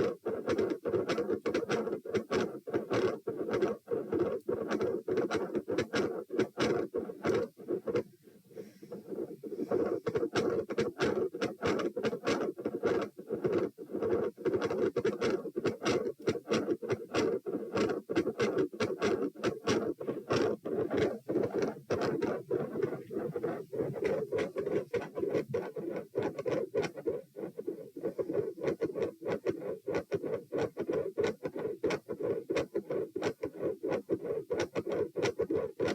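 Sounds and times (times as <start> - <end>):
heartbeat through stethoscope: 9.1 - 35.9.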